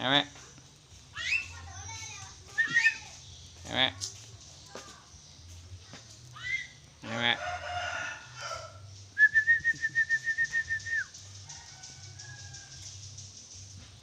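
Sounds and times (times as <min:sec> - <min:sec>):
bird whistled trill: 0:01.2 - 0:01.6, 0:02.5 - 0:03.1, 0:09.2 - 0:13.3.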